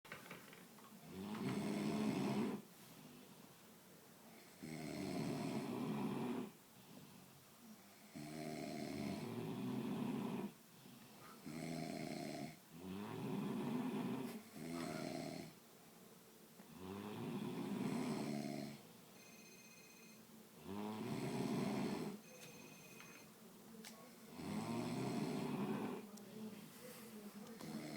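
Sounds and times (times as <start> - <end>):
people snoring: 1.0 - 2.6, 4.4 - 6.6, 8.0 - 10.6, 11.4 - 15.6, 16.7 - 18.8, 20.6 - 22.2, 24.2 - 26.1, 27.6 - 27.9.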